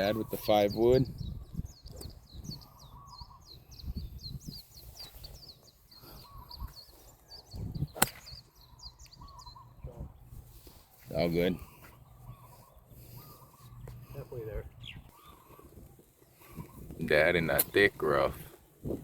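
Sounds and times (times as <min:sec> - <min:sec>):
birds chirping: 0:00.0 - 0:19.0
golf club striking ball: 0:08.0 - 0:08.4.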